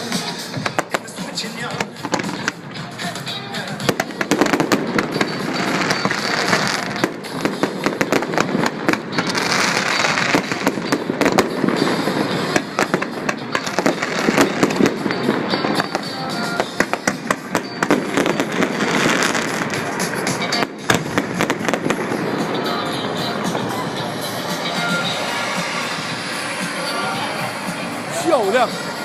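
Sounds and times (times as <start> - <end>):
fireworks bursting and crackling: 0.0 - 29.0
music: 0.0 - 29.0.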